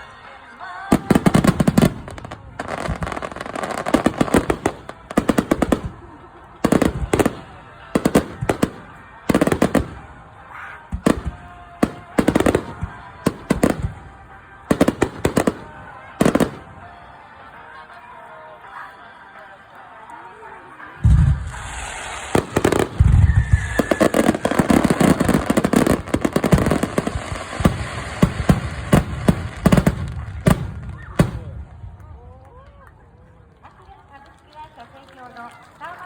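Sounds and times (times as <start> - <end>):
faint music: 0.0 - 36.0
fireworks crackling bangs: 0.9 - 16.9, 21.0 - 32.2.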